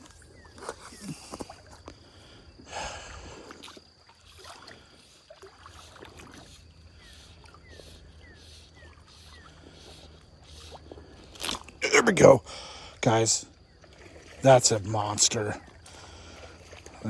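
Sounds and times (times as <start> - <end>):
creek water flowing: 0.0 - 17.0
water splashing: 3.0 - 12.2, 13.8 - 17.0.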